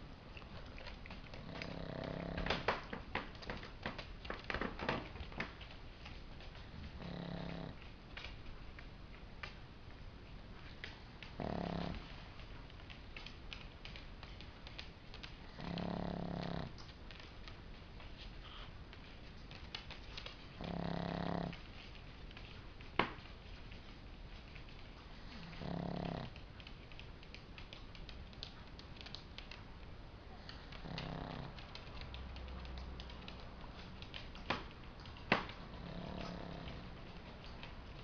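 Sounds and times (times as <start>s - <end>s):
dog snoring: 1.4s - 2.9s, 6.8s - 7.8s, 11.3s - 12.0s, 15.5s - 16.7s, 20.6s - 21.6s, 25.2s - 26.4s, 30.3s - 31.7s, 35.7s - 37.0s.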